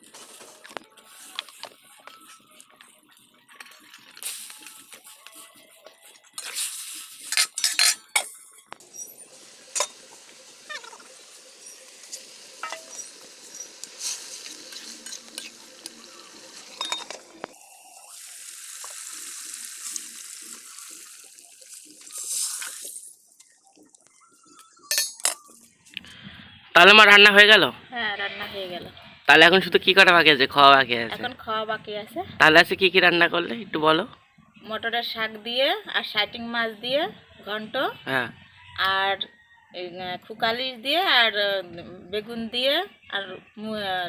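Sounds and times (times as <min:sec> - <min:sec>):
steady hiss: 0:06.4 - 0:23.4
metal utensils clinking on pot: 0:07.3 - 0:10.0, 0:12.1 - 0:14.0, 0:16.7 - 0:17.3, 0:24.8 - 0:25.6.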